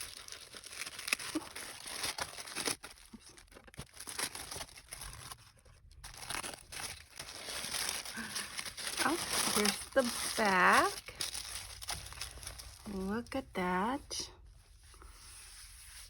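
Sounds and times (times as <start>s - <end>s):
paper tearing: 0.0s - 5.4s, 6.1s - 12.4s
wrapping paper rustling and crinkling: 0.0s - 16.0s.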